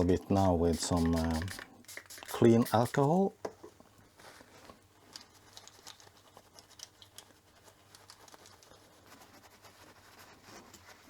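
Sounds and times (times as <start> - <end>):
light scratching: 0.7 - 3.0.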